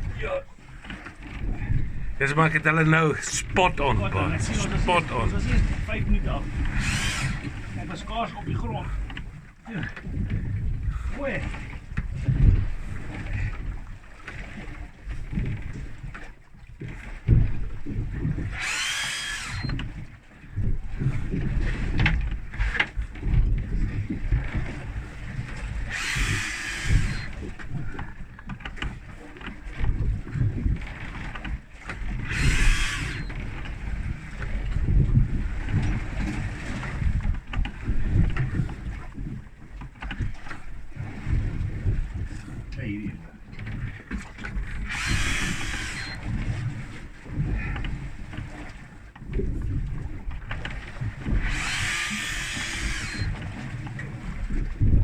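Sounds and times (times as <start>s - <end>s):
boat engine noise: 0.0s - 55.0s
water surging against hull: 0.0s - 55.0s
wind buffeting microphone: 0.0s - 55.0s
high mechanical whine: 6.6s - 7.6s, 18.6s - 19.8s, 25.9s - 27.4s, 32.2s - 33.4s, 44.8s - 46.3s, 51.4s - 53.4s.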